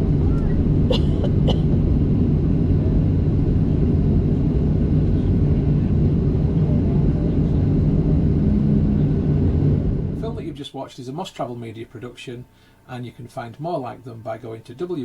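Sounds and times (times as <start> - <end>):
airplane engines rumbling in cabin: 0.0 - 10.7.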